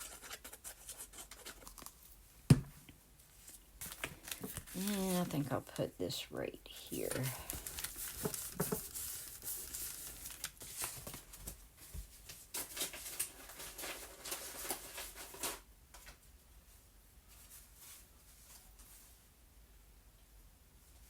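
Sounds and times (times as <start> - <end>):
paper rustling and crinkling: 3.3 - 5.8, 6.9 - 16.2.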